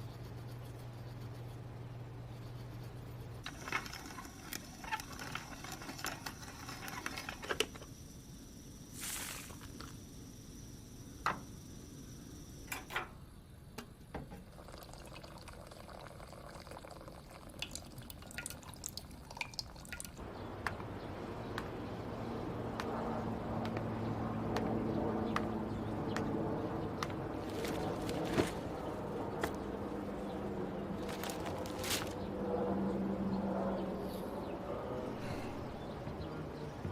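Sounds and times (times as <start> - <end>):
water dripping: 14.5 - 20.9.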